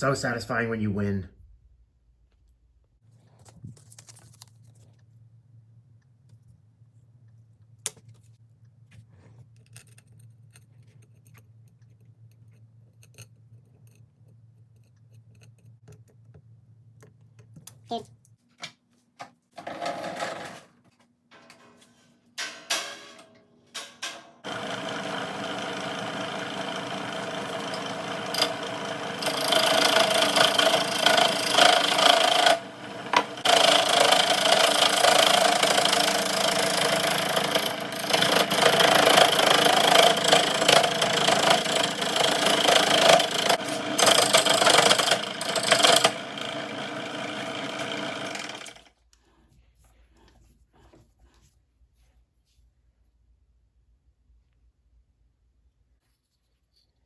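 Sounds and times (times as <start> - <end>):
electric motor running: 24.4 - 48.8.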